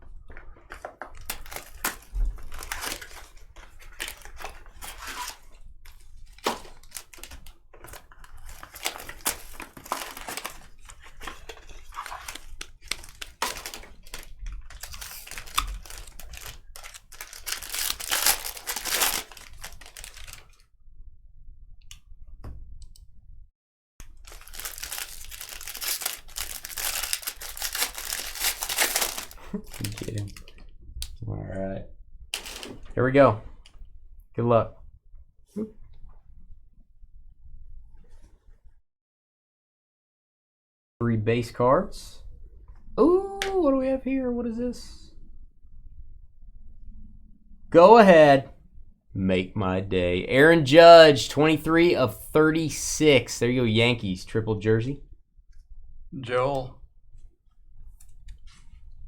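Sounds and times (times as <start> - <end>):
plastic wrapping crinkling and tearing: 0.6 - 20.6, 24.0 - 30.6, 32.4 - 32.9.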